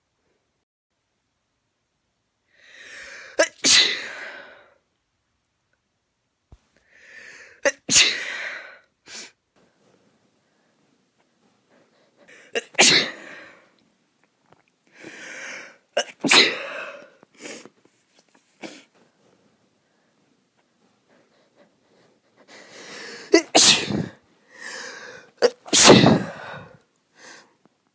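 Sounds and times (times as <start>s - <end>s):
breathy inhaling: 2.6s - 3.4s, 6.8s - 7.6s, 14.9s - 15.9s, 21.1s - 25.4s, 26.0s - 27.6s
woman sneezing: 3.4s - 4.3s, 7.6s - 8.5s, 12.6s - 13.4s, 16.0s - 17.0s, 23.3s - 24.2s, 25.4s - 26.8s.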